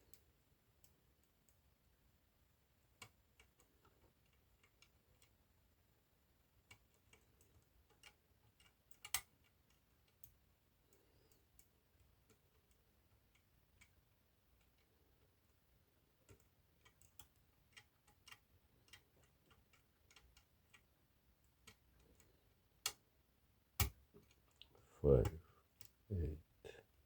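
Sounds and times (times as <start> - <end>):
lock pick metal clicks: 23.8 - 24.0.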